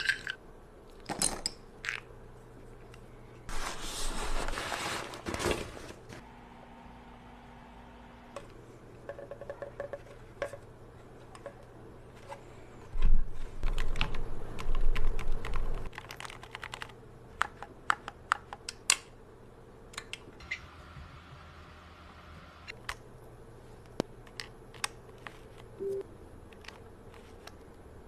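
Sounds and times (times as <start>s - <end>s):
keyboard typing: 13.6s - 18.5s.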